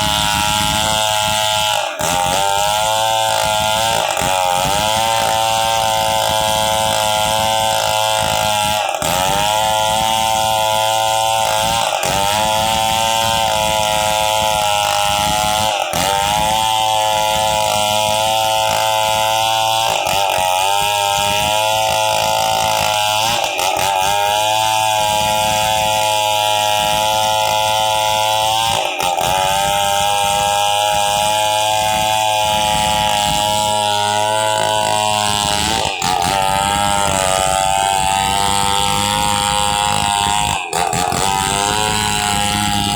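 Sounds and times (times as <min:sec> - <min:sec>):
chainsaw engine running: 0:00.0 - 0:42.9.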